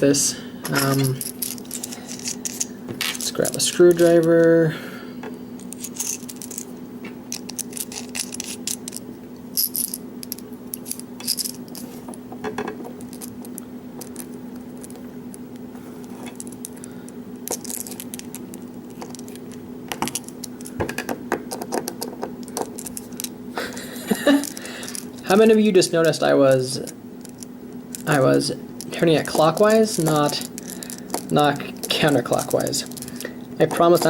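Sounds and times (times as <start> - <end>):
steady low hum: 0.0 - 34.0.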